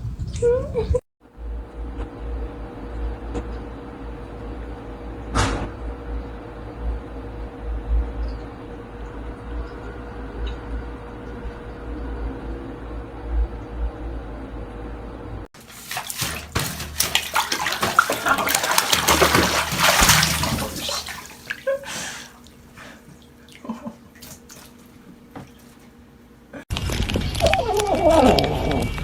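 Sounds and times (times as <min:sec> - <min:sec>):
water splashing loudly: 0:15.6 - 0:21.8.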